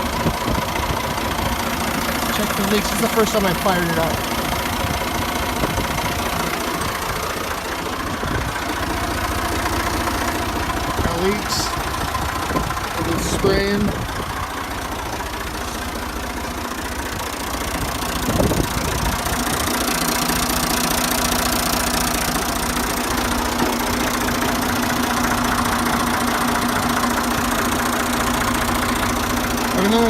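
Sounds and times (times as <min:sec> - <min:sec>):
tractor engine running: 0:00.0 - 0:30.0.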